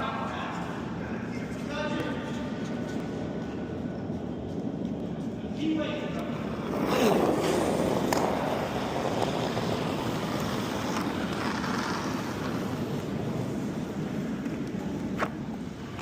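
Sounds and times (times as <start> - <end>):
curling stone rumbling on ice: 6.6 - 16.0.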